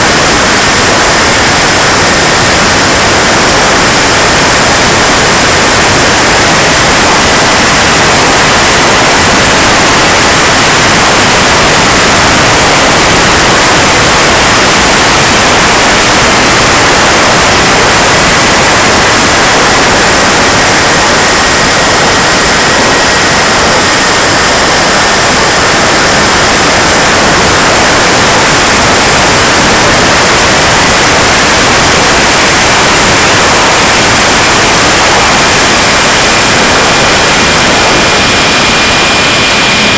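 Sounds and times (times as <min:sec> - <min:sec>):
jet turbine running: 0:00.0 - 0:39.9.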